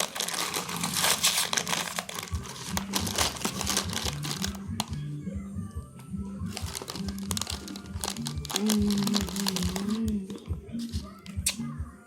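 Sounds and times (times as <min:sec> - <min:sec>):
plastic packaging crinkling: 0:00.0 - 0:05.0, 0:06.5 - 0:10.4.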